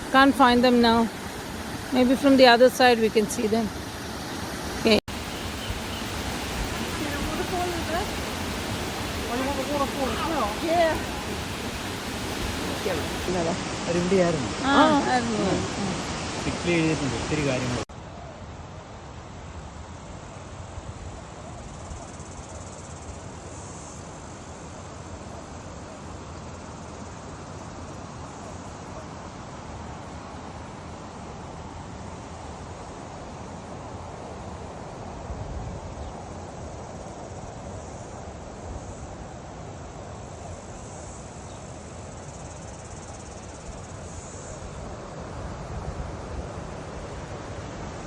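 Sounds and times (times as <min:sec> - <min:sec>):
high insect buzz: 0:00.0 - 0:13.3
insects chirring: 0:00.0 - 0:13.3, 0:21.7 - 0:24.6, 0:35.9 - 0:39.1, 0:39.8 - 0:48.0
waterfall rushing into pool: 0:00.0 - 0:17.9.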